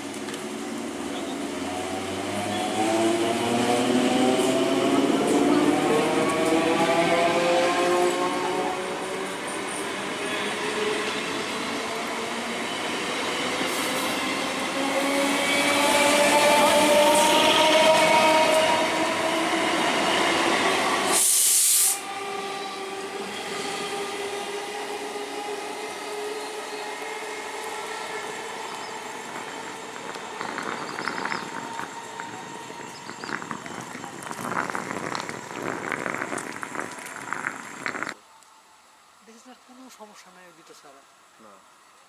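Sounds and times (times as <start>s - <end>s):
train traction motors humming: 0.0s - 38.2s
loud hiss: 20.7s - 22.2s
wheels clicking on rails: 27.0s - 38.2s.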